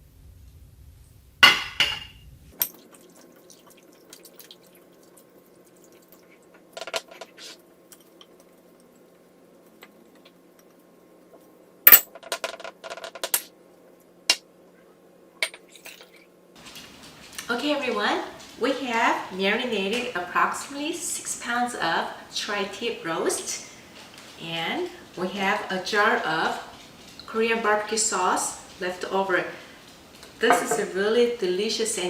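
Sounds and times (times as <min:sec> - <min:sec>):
dishes and utensils clinking: 0:30.4 - 0:30.9.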